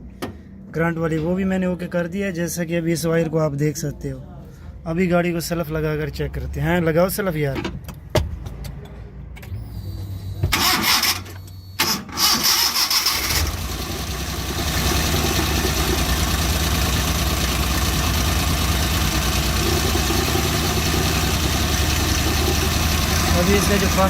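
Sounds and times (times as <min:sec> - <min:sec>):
engine cranking on starter: 0:10.5 - 0:24.0
misfiring engine idling: 0:12.2 - 0:24.0.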